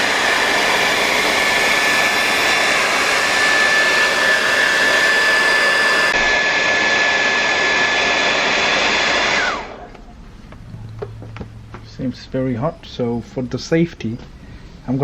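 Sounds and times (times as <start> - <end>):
hot-air blower whining: 0.0 - 10.1.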